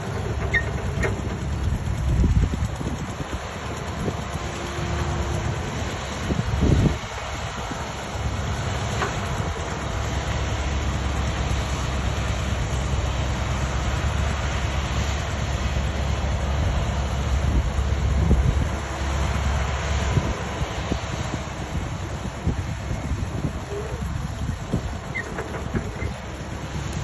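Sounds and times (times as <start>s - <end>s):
large vehicle rumbling: 0.0s - 27.0s.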